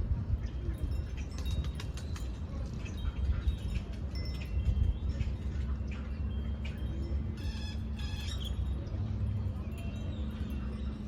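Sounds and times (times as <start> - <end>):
birds chirping: 2.8 - 11.0.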